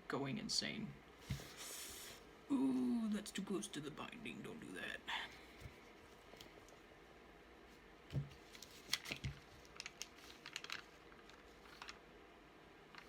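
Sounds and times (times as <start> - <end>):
paper crinkling: 8.4 - 12.0.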